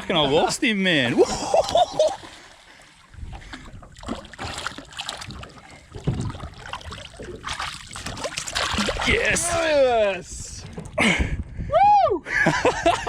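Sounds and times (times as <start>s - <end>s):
water splashing and sloshing: 0.0s - 11.6s.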